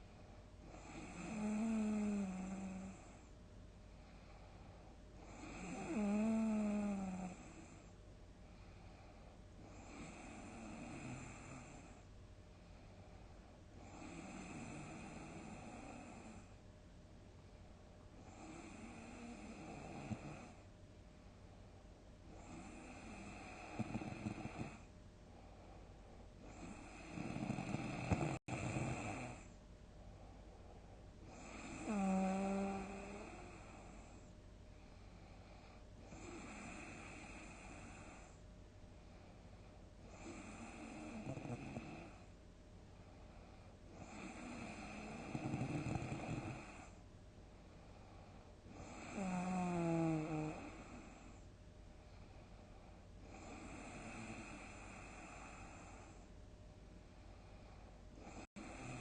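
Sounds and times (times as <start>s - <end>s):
person snoring heavily: 0.7s - 3.1s, 5.3s - 7.7s, 22.3s - 24.8s, 26.4s - 29.5s, 31.3s - 34.1s, 44.0s - 47.0s, 48.7s - 51.2s, 53.2s - 56.1s, 58.2s - 59.0s.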